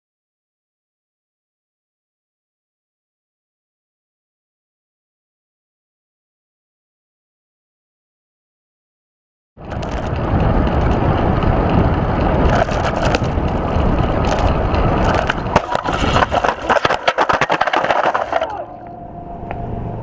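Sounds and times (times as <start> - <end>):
loud rumbling vehicle noise: 9.6 - 20.0
sharp cracks and crunches: 9.7 - 11.0, 12.3 - 18.7.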